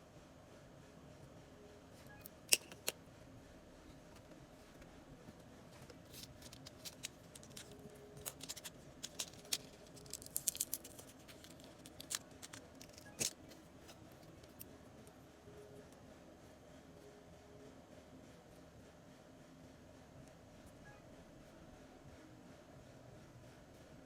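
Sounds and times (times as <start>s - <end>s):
hand tools clicking and tapping: 2.5s - 2.9s, 5.9s - 14.6s.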